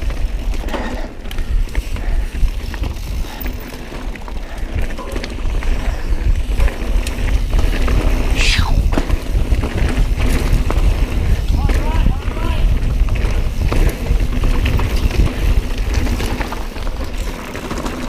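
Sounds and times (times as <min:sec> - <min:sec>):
bike clicks and rattles: 0:00.0 - 0:18.0
tyres rumbling on dirt trail: 0:00.0 - 0:18.0
wind on microphone: 0:05.7 - 0:16.2.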